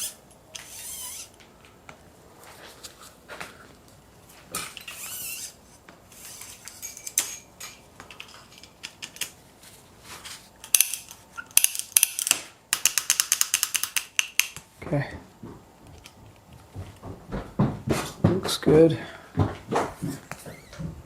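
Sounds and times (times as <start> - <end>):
scratchy scrapes: 4.8 - 7.0.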